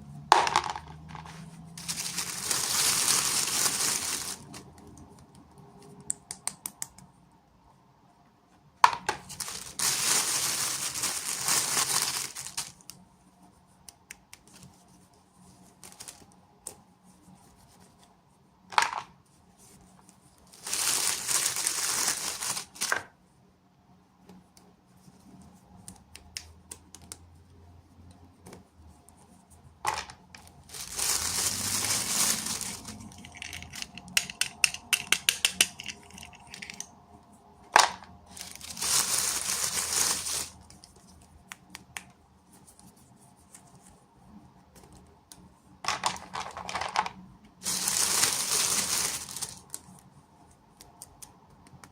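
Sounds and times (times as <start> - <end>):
packaging tearing and crinkling: 1.8 - 4.7, 9.2 - 12.9, 20.5 - 23.0, 30.6 - 34.4, 38.3 - 40.8, 47.6 - 49.9.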